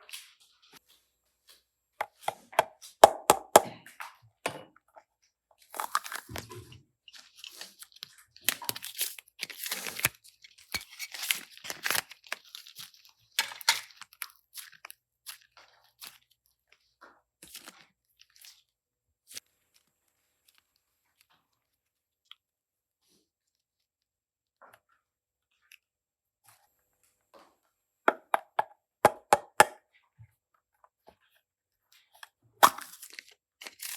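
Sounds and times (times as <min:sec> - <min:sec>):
slime squishing and crackling: 0:07.4 - 0:13.0.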